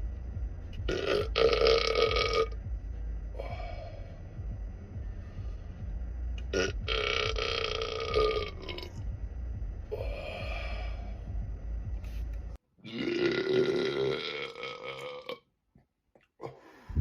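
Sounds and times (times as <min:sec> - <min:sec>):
man burping: 0:06.4 - 0:08.9, 0:12.8 - 0:15.4.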